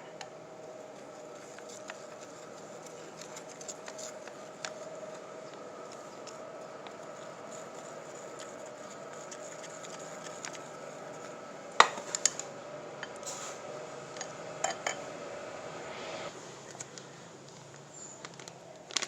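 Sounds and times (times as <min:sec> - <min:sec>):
background hum: 0:00.0 - 0:19.0
utensils and dishes clinking: 0:11.8 - 0:13.6, 0:14.2 - 0:15.1.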